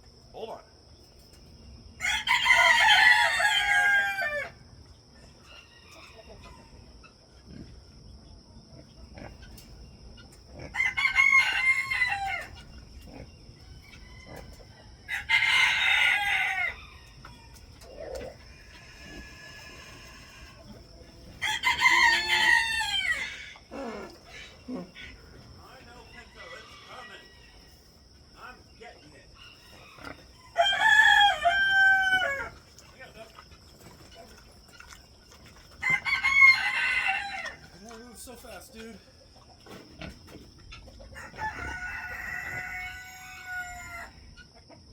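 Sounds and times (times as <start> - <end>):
rooster crowing: 2.0 - 4.7, 10.7 - 12.7, 13.6 - 20.6, 21.3 - 24.2, 25.9 - 28.0, 29.3 - 32.6, 35.8 - 37.8, 41.1 - 44.3.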